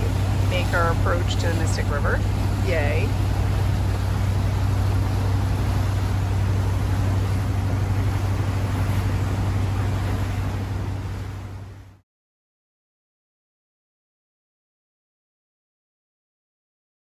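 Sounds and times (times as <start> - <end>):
rushing wind: 0.0 - 11.9
boat engine drone: 0.0 - 12.0
rushing water: 0.0 - 12.0.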